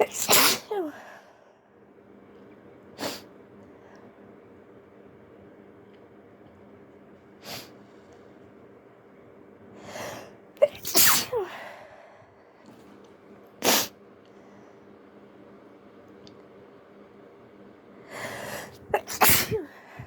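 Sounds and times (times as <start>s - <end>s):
person stifling a sneeze: 0.0s - 1.0s, 10.6s - 11.6s, 18.8s - 19.8s.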